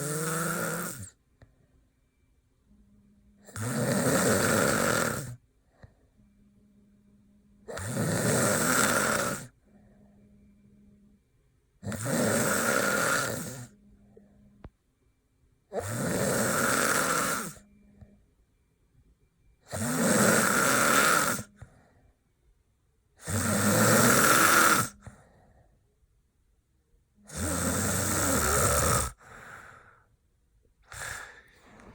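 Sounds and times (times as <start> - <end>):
man snoring loudly: 0.0 - 1.2, 3.5 - 5.4, 7.7 - 9.6, 11.8 - 13.7, 15.7 - 17.6, 19.7 - 21.5, 23.2 - 25.0, 27.3 - 29.4
quiet breaths: 0.0 - 26.3, 27.0 - 31.9.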